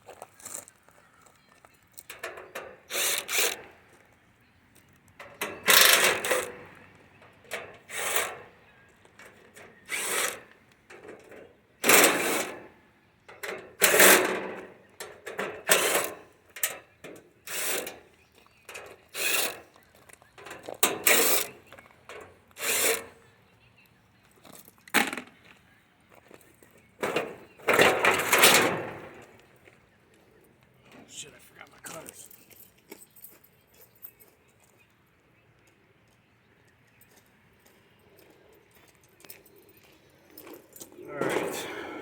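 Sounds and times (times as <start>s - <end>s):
cordless drill bursts: 2.9s - 3.6s, 7.8s - 8.5s, 9.8s - 10.5s, 11.8s - 12.7s, 13.8s - 14.5s, 15.6s - 16.2s, 17.4s - 18.0s, 19.1s - 19.6s, 20.8s - 21.6s, 22.6s - 23.1s.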